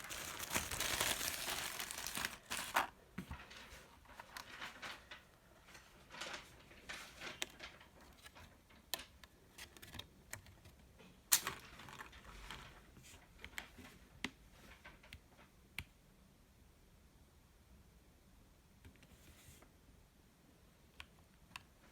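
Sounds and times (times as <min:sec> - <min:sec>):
soft rustling: 0:00.0 - 0:07.4.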